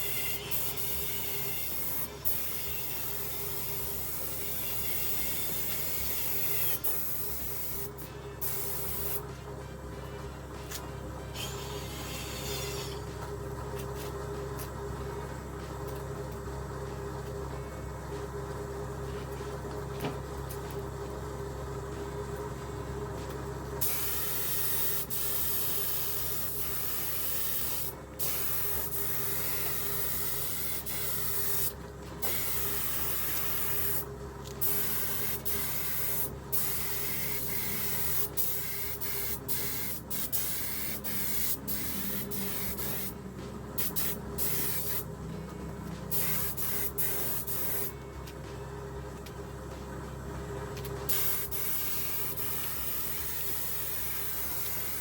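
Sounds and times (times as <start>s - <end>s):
air spray gun hissing: 0.0s - 9.2s, 23.8s - 43.2s, 43.8s - 45.0s, 46.1s - 47.9s, 51.1s - 55.0s
steady low hum: 0.0s - 55.0s.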